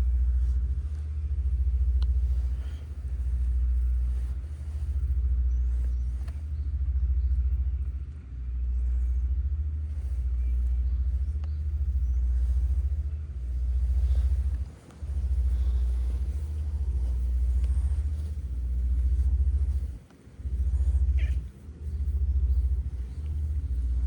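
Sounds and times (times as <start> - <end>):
cat purring: 10.0 - 24.0.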